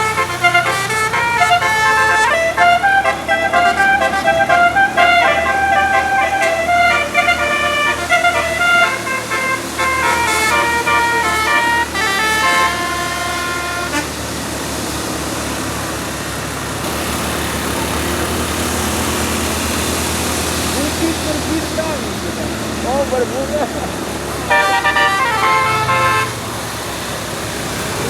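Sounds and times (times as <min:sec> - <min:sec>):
musical air horn melody: 0:00.0 - 0:14.6, 0:24.4 - 0:26.6.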